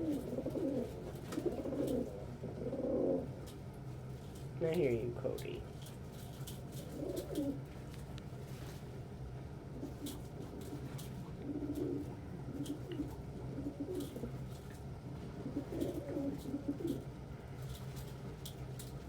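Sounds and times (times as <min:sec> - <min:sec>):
pigeons cooing: 0:00.0 - 0:03.6, 0:06.7 - 0:07.7, 0:09.6 - 0:17.2
steady low hum: 0:00.0 - 0:19.0.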